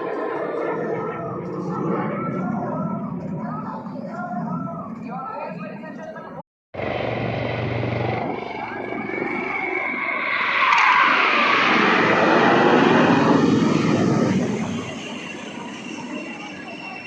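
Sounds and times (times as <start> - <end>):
aircraft engine flying past: 6.8 - 17.0.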